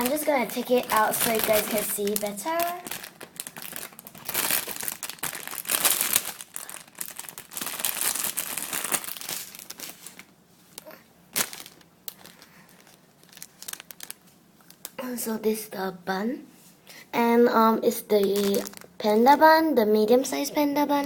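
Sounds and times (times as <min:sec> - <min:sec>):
plastic packaging crinkling: 0:00.0 - 0:15.0, 0:18.1 - 0:19.1.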